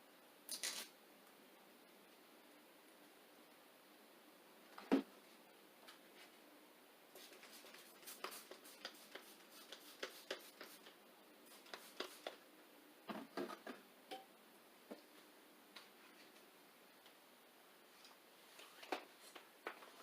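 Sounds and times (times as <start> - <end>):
clicks and crinkles of vinyl handling: 18.0 - 20.0.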